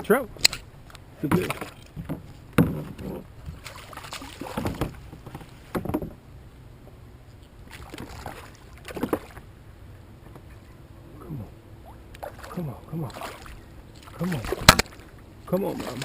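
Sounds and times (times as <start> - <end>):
water splashes: 1.2 - 5.7, 7.6 - 9.5, 11.2 - 16.0
knocks on kayak: 4.5 - 6.2.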